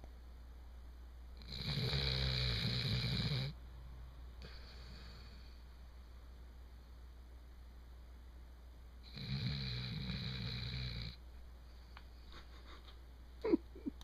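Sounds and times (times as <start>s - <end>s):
dog snoring: 1.4s - 3.6s, 9.0s - 11.2s.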